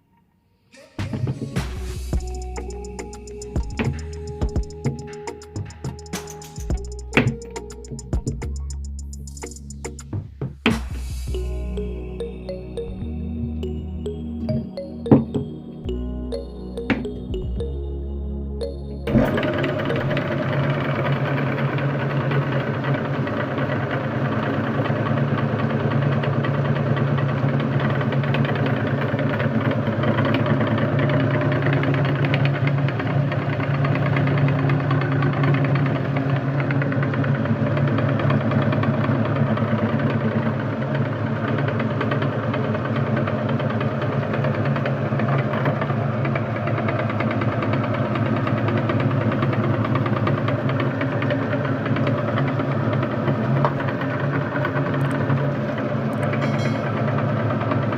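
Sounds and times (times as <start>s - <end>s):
meat grinder motor humming: 19.2s - 56.4s.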